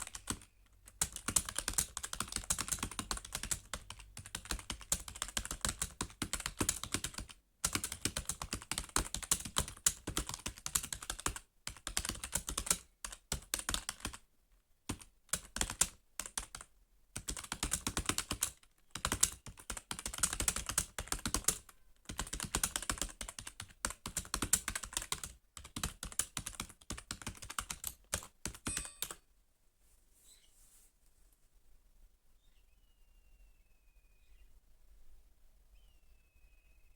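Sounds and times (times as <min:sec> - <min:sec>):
fast typing on keyboard: 0:00.0 - 0:14.2, 0:14.9 - 0:29.2.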